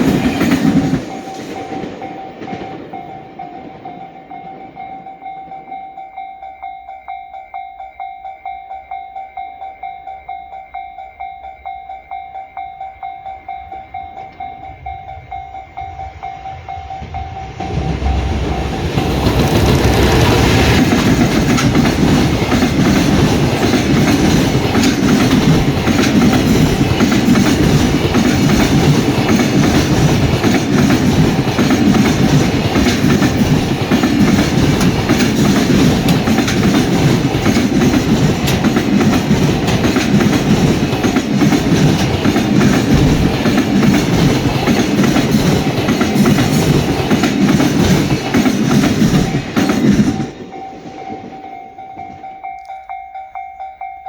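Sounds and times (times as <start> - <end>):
freight train passing: 0.0 - 54.0
level crossing alarm bell: 1.0 - 17.8, 49.1 - 54.0
wheels clicking over rail joints: 17.7 - 52.9.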